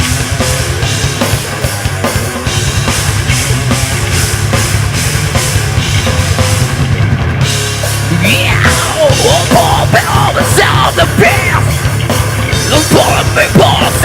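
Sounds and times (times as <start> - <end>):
heavy rock band playing: 0.0 - 14.0
pounding drum kit: 0.0 - 14.0.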